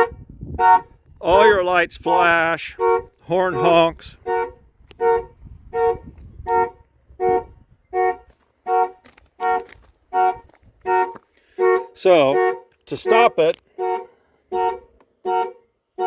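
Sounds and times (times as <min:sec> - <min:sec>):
car horn honking: 0:00.0 - 0:16.0.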